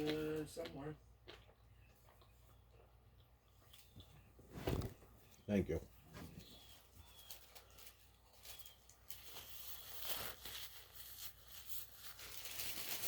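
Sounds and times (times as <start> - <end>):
food and paper rustling: 3.6 - 13.0.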